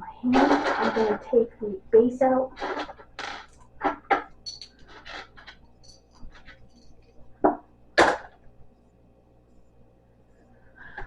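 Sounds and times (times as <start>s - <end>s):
knocks and scrapes of table parts: 2.6s - 5.6s
small metallic clinks: 4.3s - 7.2s.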